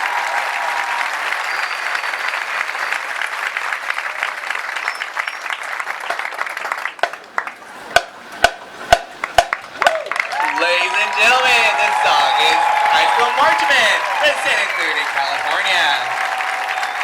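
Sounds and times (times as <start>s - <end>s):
crowd applauding and cheering: 0.0s - 7.7s, 9.2s - 17.0s
sharp knocks: 7.9s - 10.0s.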